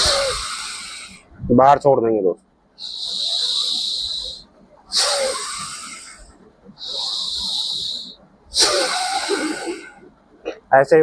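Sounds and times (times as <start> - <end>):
forceful hissing nose breaths: 0.0 - 1.3, 2.8 - 10.2.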